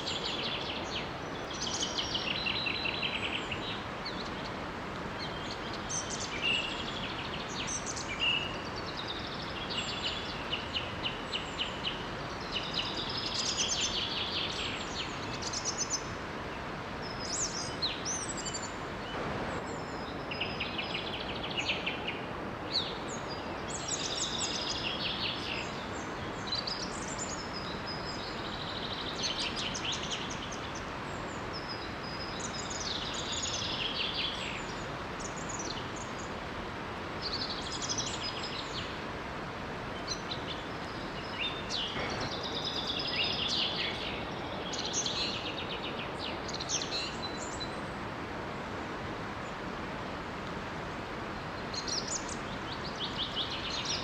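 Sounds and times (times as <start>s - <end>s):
small waterfall rushing: 0.0s - 54.0s
songbirds trilling and chirping: 0.0s - 54.0s.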